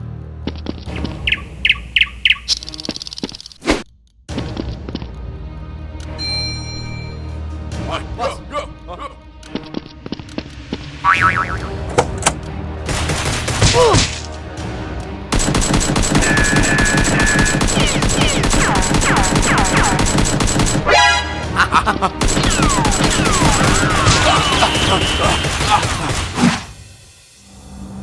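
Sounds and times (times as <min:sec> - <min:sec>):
rapid gunfire: 0:12.9 - 0:14.0, 0:15.3 - 0:20.9, 0:22.2 - 0:26.4.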